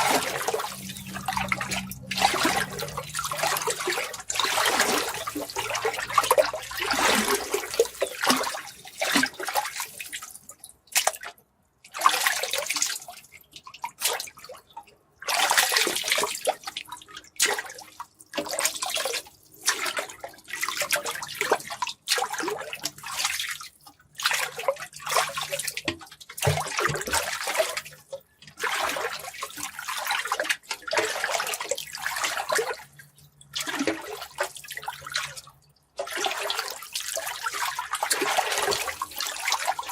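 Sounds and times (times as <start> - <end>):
water gushing in bursts: 0.0 - 9.8.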